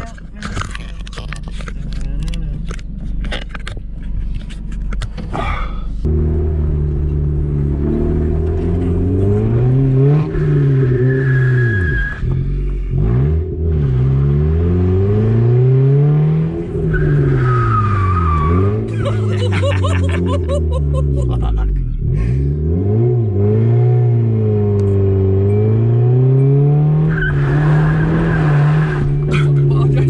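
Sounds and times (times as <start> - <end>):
car engine revving: 6.0 - 30.0.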